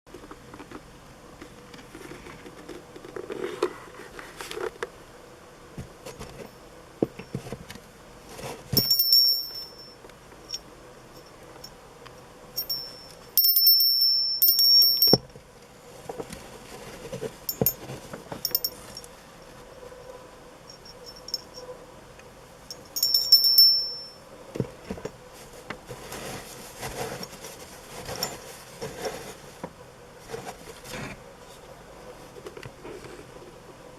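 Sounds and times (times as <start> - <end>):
knocks and rustles of handling: 0.1 - 5.0, 5.7 - 13.6, 14.6 - 20.0, 22.7 - 33.7
call bell ringing: 8.8 - 10.0, 12.6 - 15.2, 22.7 - 24.2.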